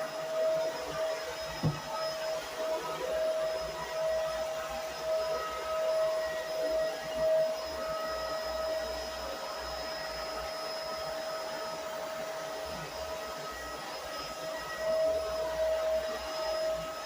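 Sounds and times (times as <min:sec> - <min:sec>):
vacuum cleaner running: 0:00.0 - 0:17.0.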